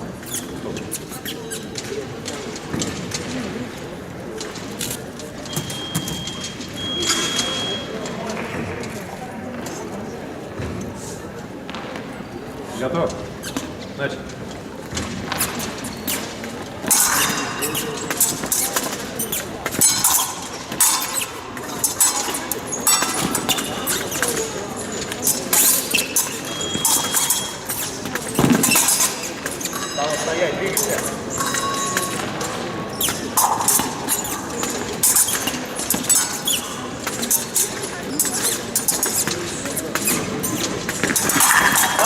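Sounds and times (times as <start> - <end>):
shoes squeaking on floor: 0.0 - 42.0
fencing blades clicking: 15.5 - 42.0.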